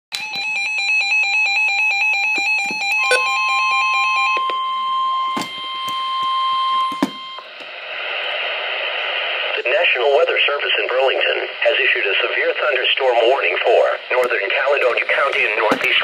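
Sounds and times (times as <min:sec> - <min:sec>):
warbling electronic alarm beeps: 0:00.2 - 0:07.5
steady warning alarm tone: 0:00.2 - 0:07.7.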